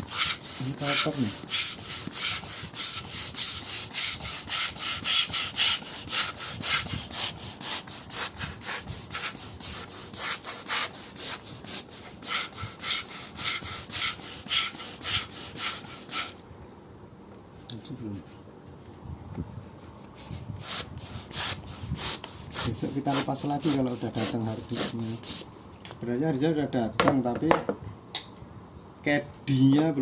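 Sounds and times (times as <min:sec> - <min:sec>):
rapid rhythmic rubbing strokes: 0:00.0 - 0:16.4, 0:20.6 - 0:25.5.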